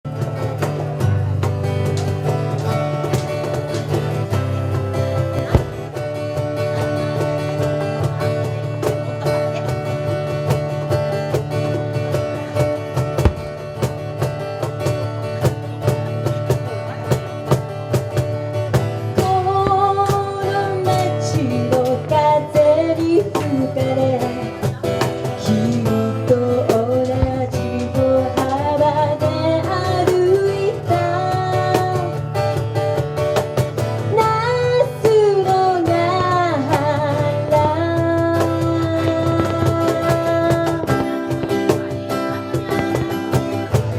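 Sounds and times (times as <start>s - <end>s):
acoustic guitar strumming: 0.1s - 43.9s
person singing: 19.2s - 32.2s, 34.1s - 43.6s.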